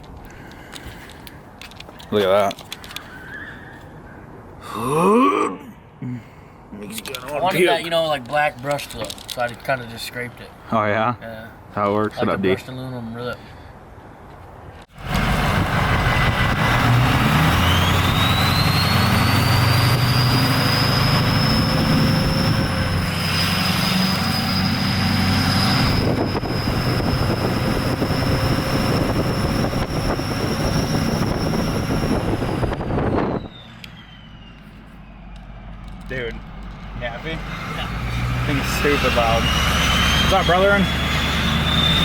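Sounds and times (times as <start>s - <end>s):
diesel engine rumble: 13.4s - 42.0s
high turbo whistle: 15.6s - 35.6s, 37.4s - 42.0s.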